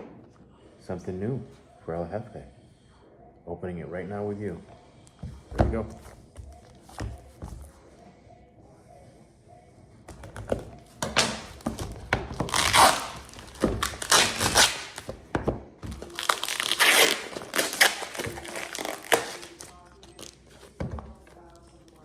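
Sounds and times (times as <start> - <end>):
package thunks: 10.1 - 20.2
packing material crinkling: 11.1 - 15.1, 15.8 - 20.7
package being torn open: 12.5 - 15.1, 16.0 - 20.4.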